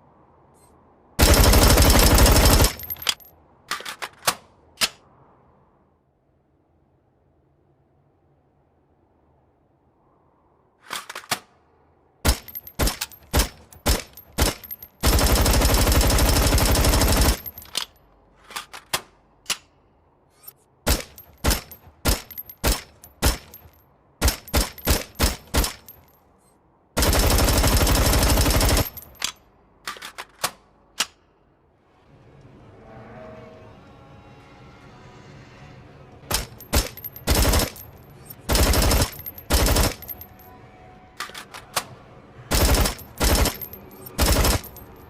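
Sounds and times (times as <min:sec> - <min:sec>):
automatic rifle bursts: 0:36.3 - 0:37.8, 0:38.5 - 0:40.2, 0:42.5 - 0:44.8.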